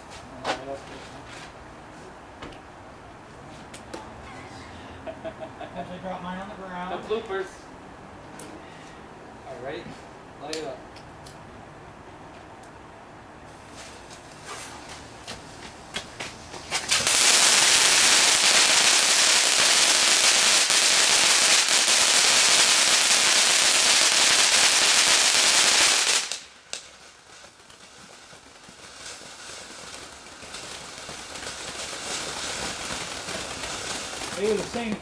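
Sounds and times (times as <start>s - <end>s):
faint hiss: 13.4s - 35.0s
firework crackling hiss: 13.5s - 35.0s.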